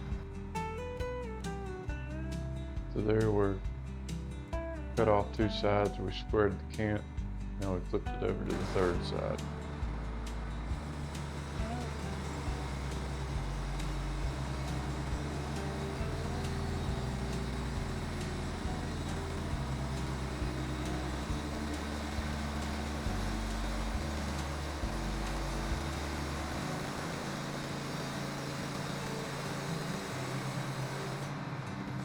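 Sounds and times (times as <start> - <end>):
gasoline engine running: 0.0 - 32.0.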